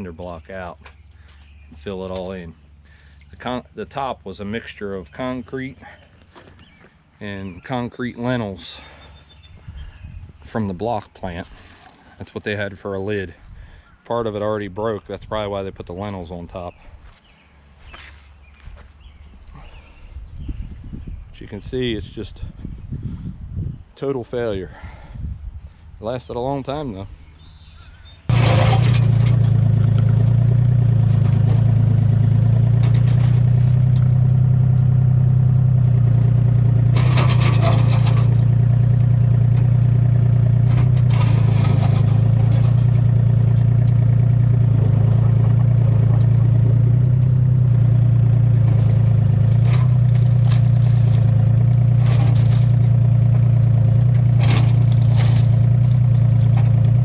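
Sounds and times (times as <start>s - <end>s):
bucket scraping and clattering block: 11.4s - 12.3s, 28.3s - 34.2s, 36.8s - 46.4s, 48.5s - 57.0s
excavator diesel engine running: 27.9s - 57.0s.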